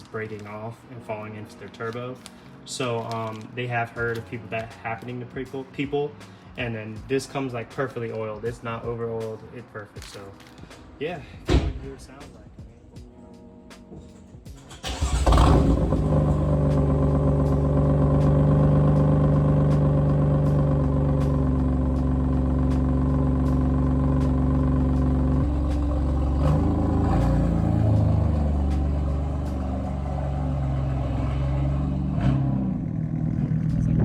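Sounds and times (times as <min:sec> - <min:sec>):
car engine starting and idling: 0:14.1 - 0:34.0.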